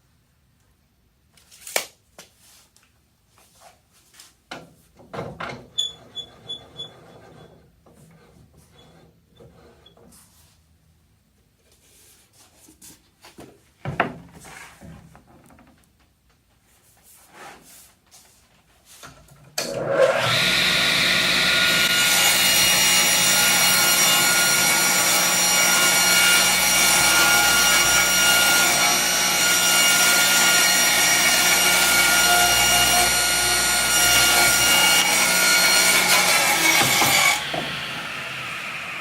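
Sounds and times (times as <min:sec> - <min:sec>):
power saw cutting wood: 0:19.6 - 0:39.0
boards knocking: 0:36.0 - 0:37.8.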